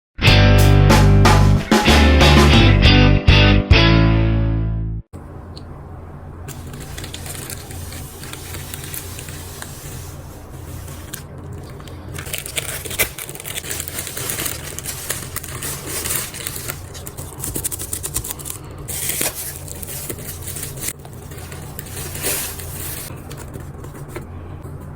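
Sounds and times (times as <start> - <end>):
cardboard and plastic packaging handled: 6.5 - 24.9.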